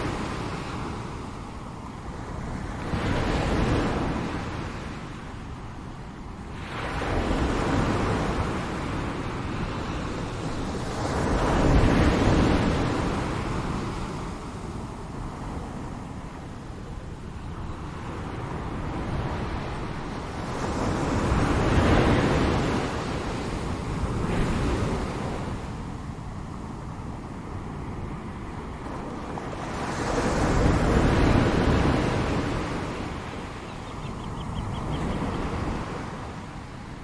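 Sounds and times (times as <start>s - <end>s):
ocean waves breaking: 17.9s - 37.0s.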